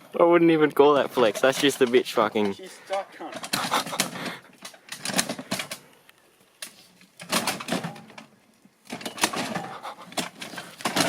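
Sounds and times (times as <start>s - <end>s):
rapid clicking and rattling: 3.3s - 5.8s, 7.2s - 8.3s, 8.9s - 11.0s.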